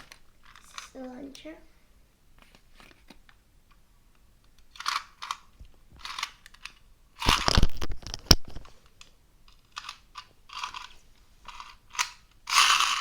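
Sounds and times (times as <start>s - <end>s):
plastic packaging crinkling: 7.2s - 8.7s.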